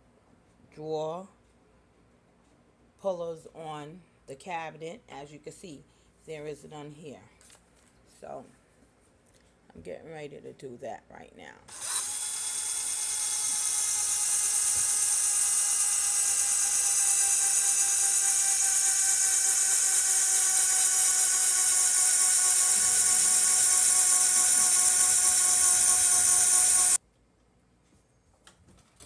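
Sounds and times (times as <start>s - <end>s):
electric drill whining: 11.7s - 27.0s.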